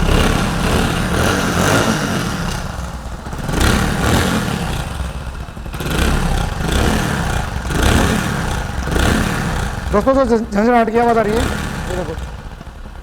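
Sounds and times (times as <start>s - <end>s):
motorcycle engine running: 0.0s - 13.0s
exhaust jangling rattle: 4.9s - 13.0s.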